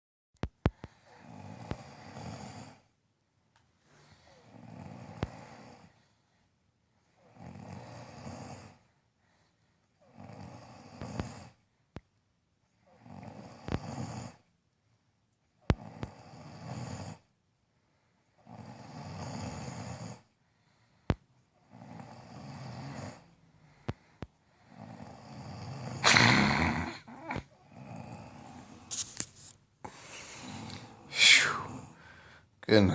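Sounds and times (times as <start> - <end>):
loud snoring: 1.0 - 2.9, 4.1 - 6.0, 7.2 - 8.8, 10.0 - 11.6, 13.0 - 14.4, 15.7 - 17.3, 18.4 - 20.3, 21.6 - 23.3, 24.6 - 28.9, 29.9 - 32.2.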